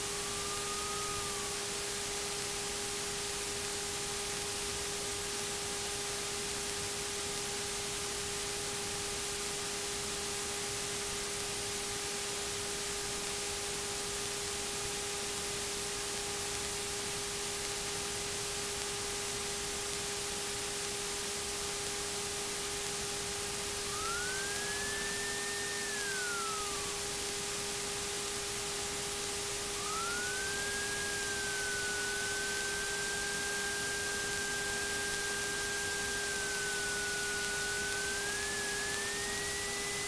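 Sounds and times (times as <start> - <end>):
electrical whine: 0.0 - 4.9, 20.2 - 40.0
static hiss: 0.0 - 40.0.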